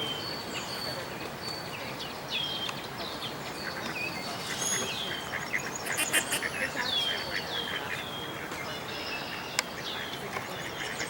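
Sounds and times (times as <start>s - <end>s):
ducklings peeping: 4.8s - 7.5s.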